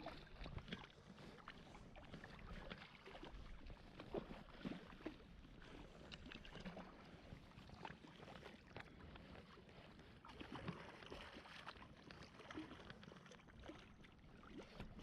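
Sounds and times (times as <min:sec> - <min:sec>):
water splashing and sloshing: 0:00.0 - 0:15.0.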